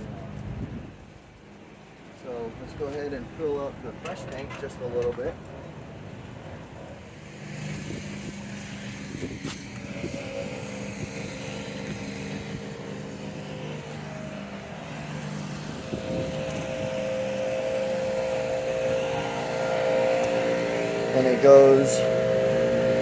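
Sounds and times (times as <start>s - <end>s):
motor humming: 5.7s - 23.0s.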